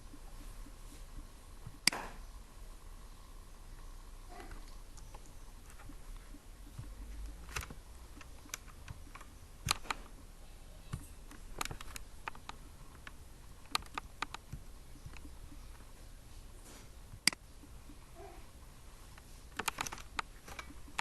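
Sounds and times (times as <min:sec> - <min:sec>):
low steady hum: 0:00.0 - 0:21.0
computer clicks: 0:06.8 - 0:10.1, 0:10.9 - 0:15.6, 0:19.6 - 0:21.0.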